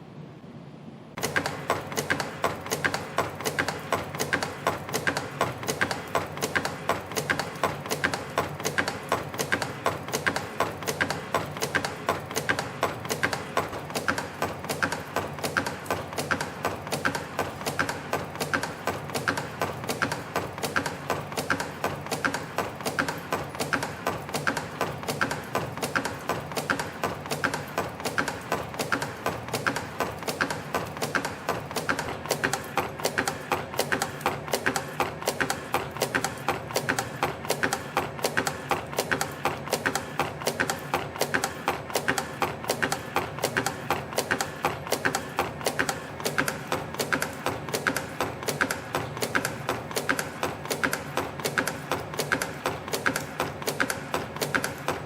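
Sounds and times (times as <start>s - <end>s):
steady machine hum: 0.0s - 55.0s
machine clicking and tapping: 1.2s - 55.0s.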